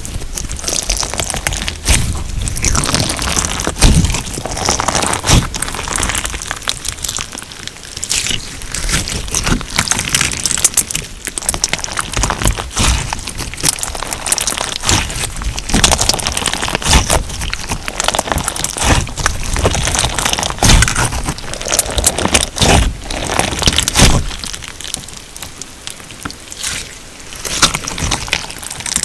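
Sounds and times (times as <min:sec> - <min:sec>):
crunchy slime crackling and popping: 0:00.0 - 0:29.0.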